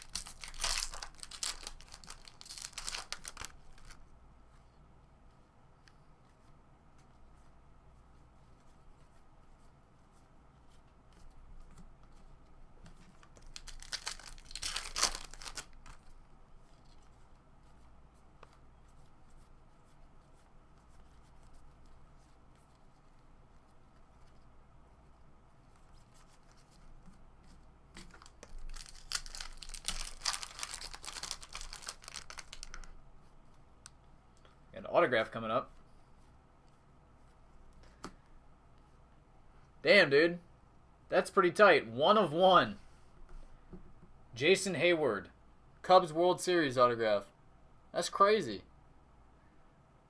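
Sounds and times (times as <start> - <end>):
foil wrapper tearing and crinkling: 0.0 - 4.0, 13.4 - 16.0, 28.1 - 32.9.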